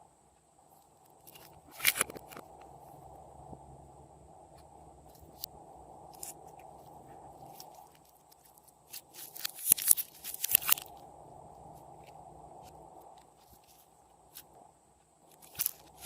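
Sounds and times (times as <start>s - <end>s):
slime crackling and popping: 7.5s - 10.9s.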